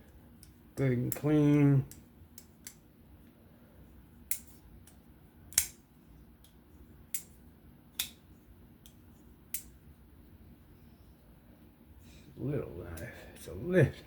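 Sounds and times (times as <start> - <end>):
folding knife clicking: 4.3 - 5.8.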